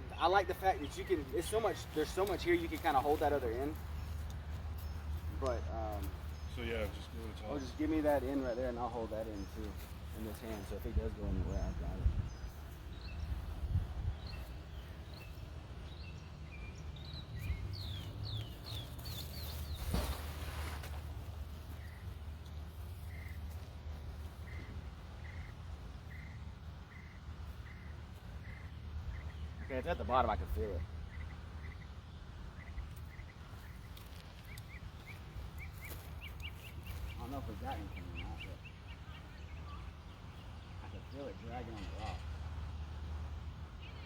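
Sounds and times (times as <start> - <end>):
birds chirping: 0.0 - 44.0
steady low rumble: 3.7 - 18.7.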